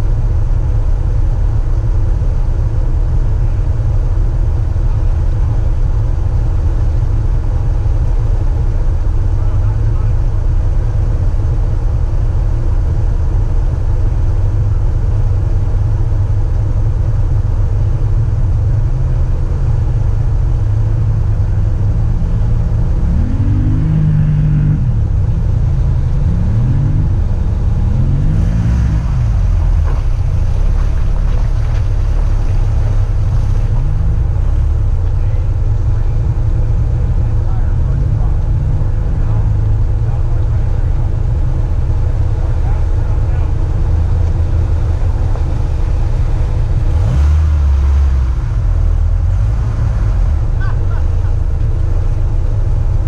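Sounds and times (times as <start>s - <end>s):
car engine and road drone: 0.0s - 53.0s
engine revving: 21.0s - 40.8s, 42.3s - 53.0s.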